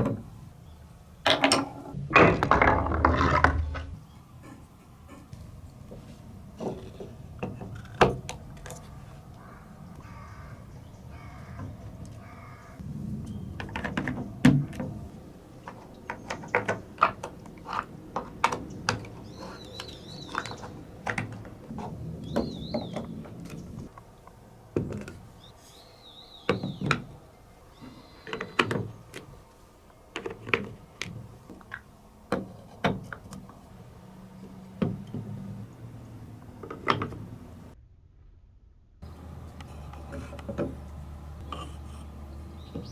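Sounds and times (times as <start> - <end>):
marbles rolling rumble: 2.4 - 4.0.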